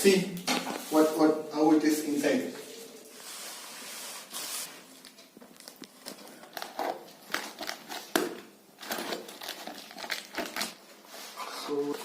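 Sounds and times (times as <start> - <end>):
cardboard packaging crinkling: 5.1 - 12.0.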